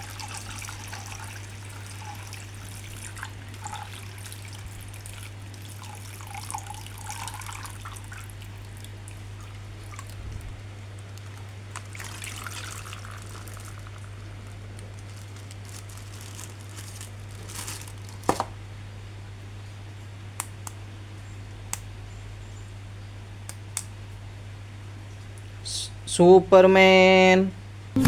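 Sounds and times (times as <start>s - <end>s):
steady low hum: 0.0s - 28.0s
soft rustling: 13.1s - 18.3s.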